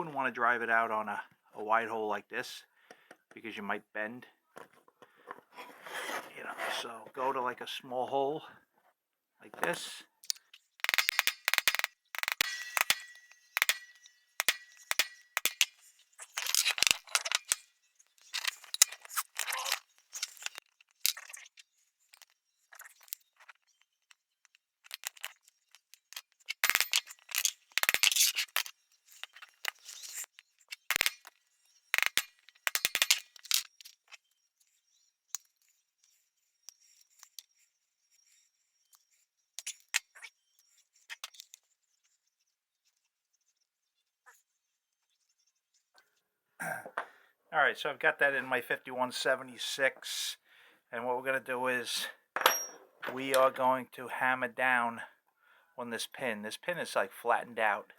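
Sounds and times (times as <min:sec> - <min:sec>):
metal tools clicking on workbench: 0:10.2 - 0:17.6, 0:26.1 - 0:29.8, 0:30.9 - 0:31.3, 0:32.0 - 0:33.8, 0:52.4 - 0:53.4.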